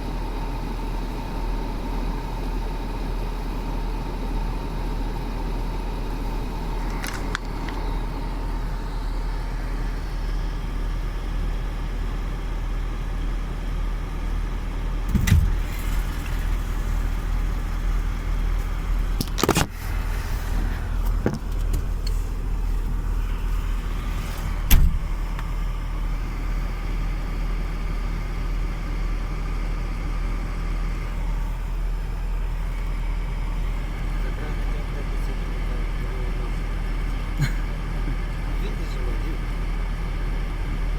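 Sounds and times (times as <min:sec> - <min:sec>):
crane engine humming: 0:00.0 - 0:40.9
sharp knocks and clunks: 0:15.1 - 0:16.1, 0:24.3 - 0:25.5.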